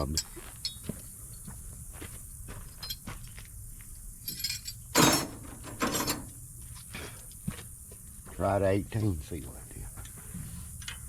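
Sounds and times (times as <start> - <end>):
metal hand tools clinking: 4.3 - 6.3.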